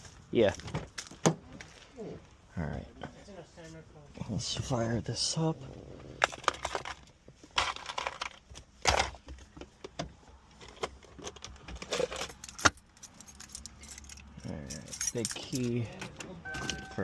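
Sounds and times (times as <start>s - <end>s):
keys jangling: 11.9s - 17.0s.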